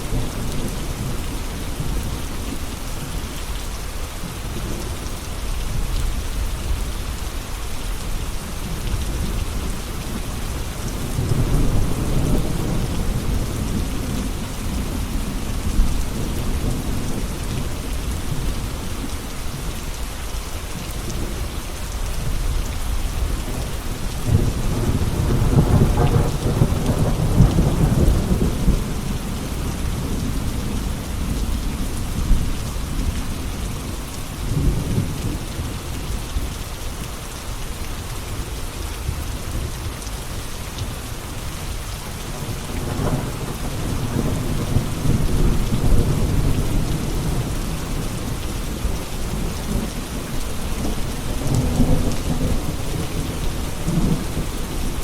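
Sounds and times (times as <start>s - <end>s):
steady rain falling: 0.0s - 55.0s
thunder rumbling: 23.2s - 33.4s, 42.3s - 55.0s.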